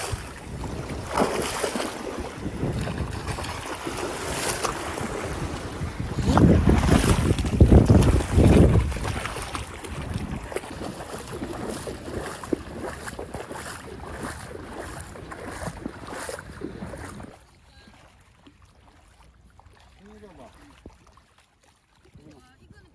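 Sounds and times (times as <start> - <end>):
wind buffeting microphone: 0.0 - 17.4.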